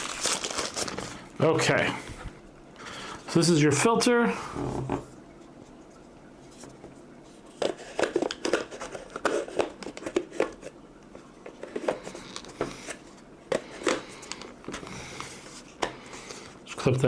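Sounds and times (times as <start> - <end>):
plastic parts clicking and knocking: 7.6 - 10.7.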